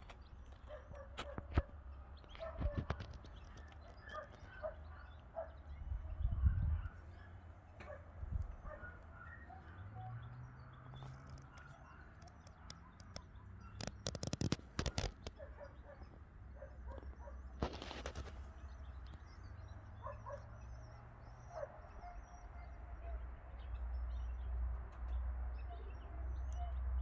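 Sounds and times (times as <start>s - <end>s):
small birds chirping: 0.0s - 27.0s
brief rustle: 11.0s - 15.5s, 17.6s - 18.6s
sharp clicks: 11.1s - 15.4s.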